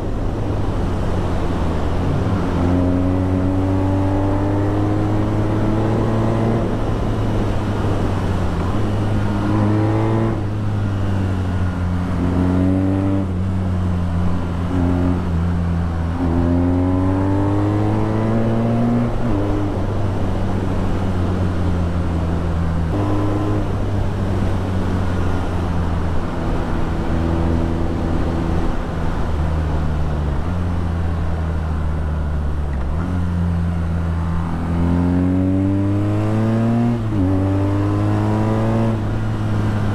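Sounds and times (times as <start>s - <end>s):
motorcycle engine revving: 2.0s - 20.0s, 22.8s - 28.8s, 32.7s - 39.9s.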